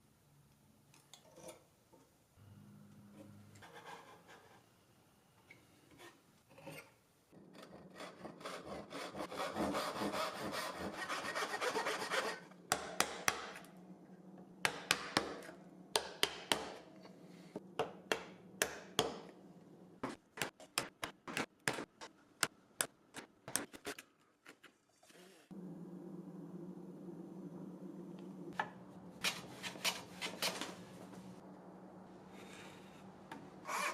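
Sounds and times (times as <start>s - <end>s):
tool rasping on wood: 7.6s - 12.4s.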